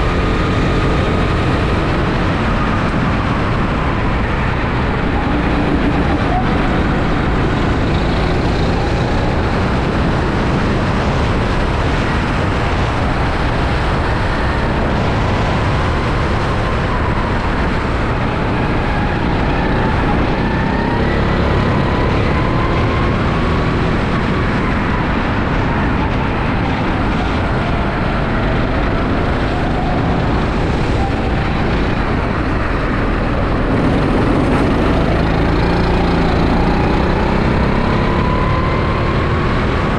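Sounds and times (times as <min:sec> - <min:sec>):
wind noise on microphone: 0:00.0 - 0:39.9
kart engine revving: 0:27.0 - 0:39.9.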